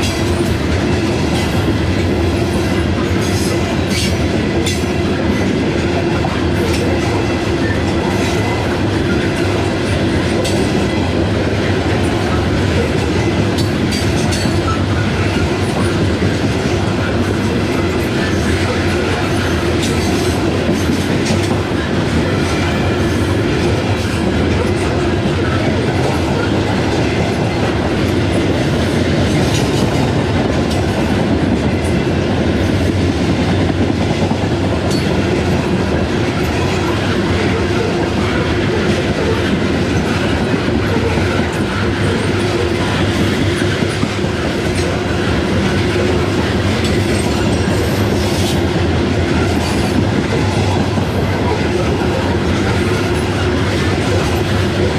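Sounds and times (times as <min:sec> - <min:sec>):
freight train rolling past: 0:00.0 - 0:54.9
train wheels clicking over rail joints: 0:00.0 - 0:54.9.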